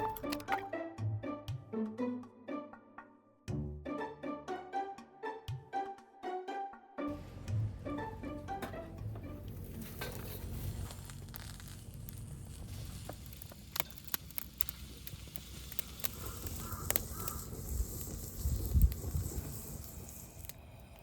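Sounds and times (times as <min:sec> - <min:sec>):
sharp clicks: 0:00.0 - 0:00.6, 0:13.1 - 0:19.3
low outdoor rumble: 0:07.1 - 0:21.0
crow cawing: 0:16.0 - 0:17.6.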